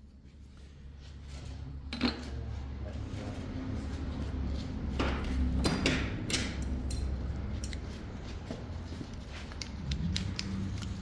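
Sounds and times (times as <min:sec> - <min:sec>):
metal tools clinking and scraping: 0:06.2 - 0:08.2.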